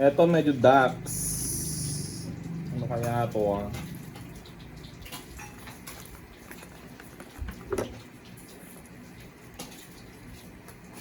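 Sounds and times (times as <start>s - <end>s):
plants and packaging rustling: 5.0s - 11.0s.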